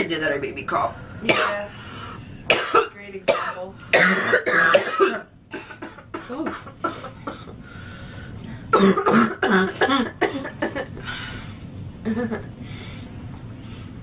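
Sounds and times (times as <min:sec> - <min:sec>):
woman coughing: 0:01.3 - 0:01.7, 0:02.5 - 0:07.5, 0:08.7 - 0:11.0.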